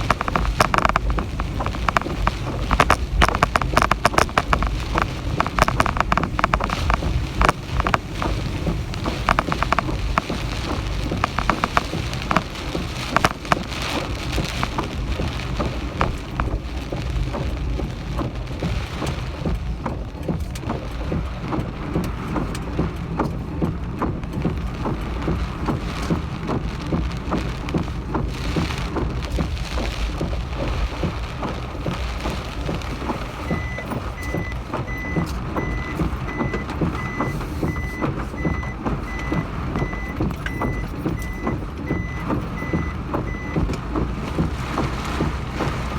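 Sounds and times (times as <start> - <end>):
heavy rain: 0.0 - 45.9
vehicle reversing beeper: 33.4 - 43.6.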